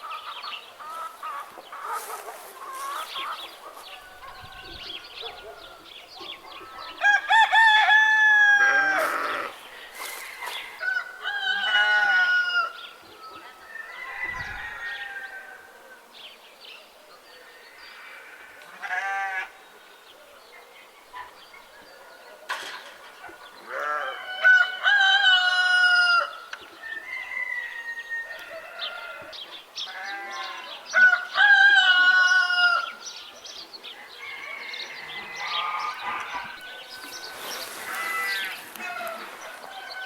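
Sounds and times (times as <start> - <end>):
hens clucking: 0.0 - 4.4
farm animals calling: 0.0 - 15.7, 17.4 - 19.7, 23.1 - 40.0
rooster crowing: 6.8 - 12.8, 13.6 - 15.7, 23.8 - 29.3, 30.9 - 33.0, 34.0 - 40.0
small birds chirping: 32.8 - 40.0.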